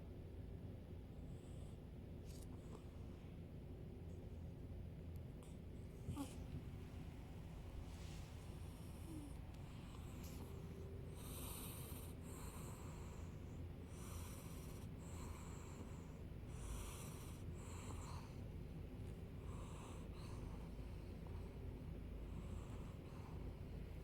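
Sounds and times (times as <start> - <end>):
cat snoring: 6.0 - 6.5, 8.0 - 18.4, 19.4 - 21.1, 22.3 - 23.4.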